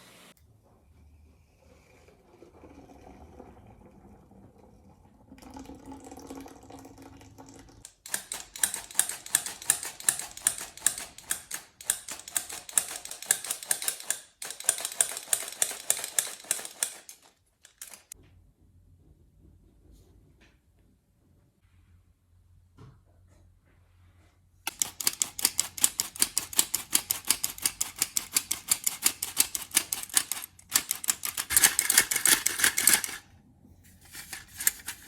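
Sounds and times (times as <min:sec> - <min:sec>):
kitchen utensil clicking rapidly: 0:07.9 - 0:18.2, 0:24.7 - 0:33.2, 0:34.0 - 0:35.0.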